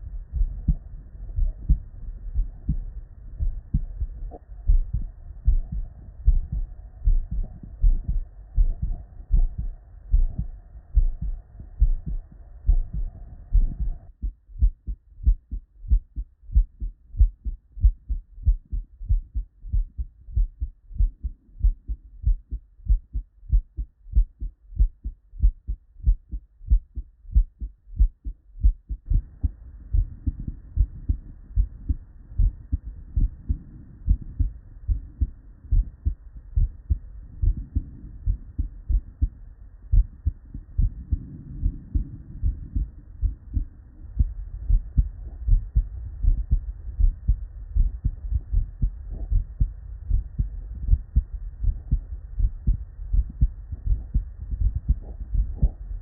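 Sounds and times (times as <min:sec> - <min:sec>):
heartbeat through stethoscope: 0:00.0 - 0:56.0.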